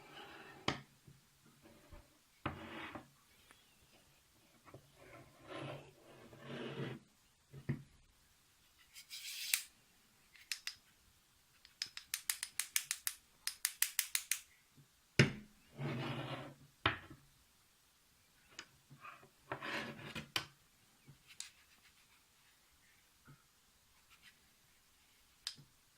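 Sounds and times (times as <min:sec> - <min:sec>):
bearing block scraping on rail: 0:05.0 - 0:07.0, 0:19.5 - 0:20.2.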